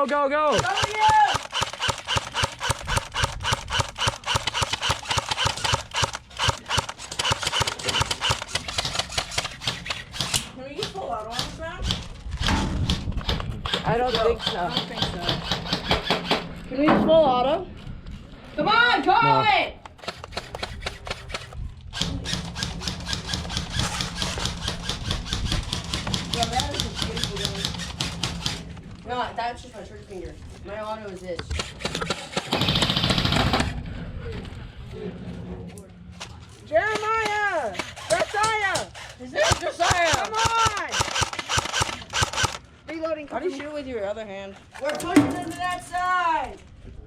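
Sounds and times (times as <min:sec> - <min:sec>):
airsoft gun rapid firing: 0:00.5 - 0:16.5, 0:20.0 - 0:28.7, 0:31.6 - 0:33.6, 0:37.0 - 0:42.7.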